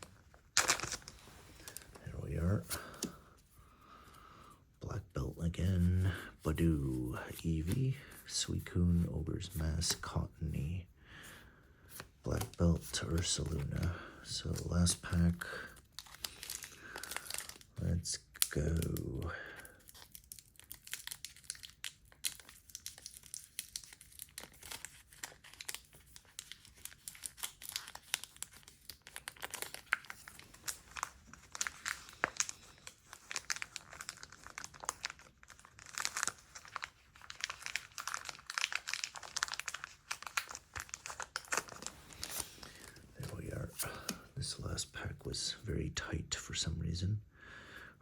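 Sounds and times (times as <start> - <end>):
foil wrapper crinkling and tearing: 0.0 - 3.2, 12.3 - 44.2.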